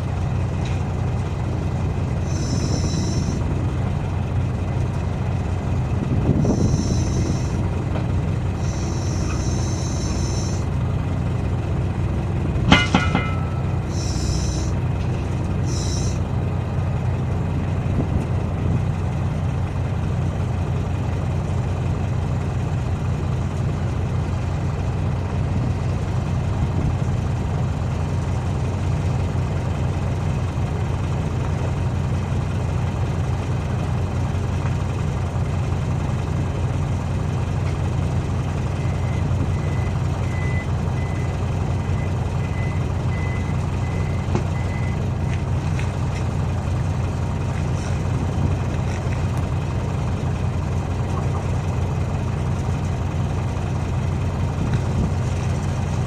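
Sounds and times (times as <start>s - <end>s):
diesel engine idling: 0.0s - 56.0s
short high beeps: 2.3s - 3.4s, 6.5s - 7.6s, 8.6s - 10.6s, 13.2s - 14.7s, 15.7s - 16.2s.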